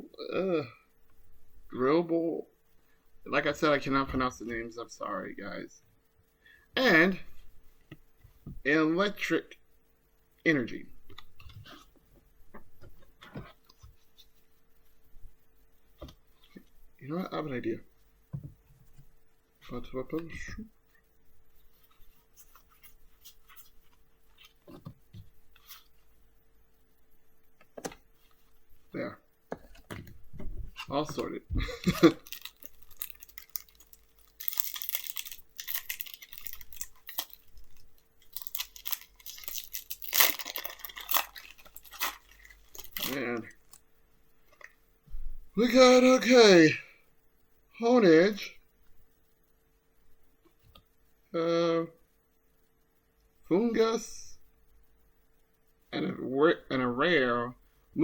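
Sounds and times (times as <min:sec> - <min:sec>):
thin steady hum: 0:00.0 - 0:58.0
foil wrapper crinkling and tearing: 0:30.8 - 0:43.8.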